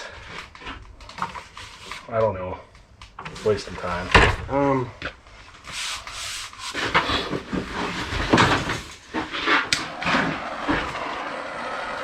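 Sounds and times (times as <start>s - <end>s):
objects knocking and clunking: 6.7s - 9.3s.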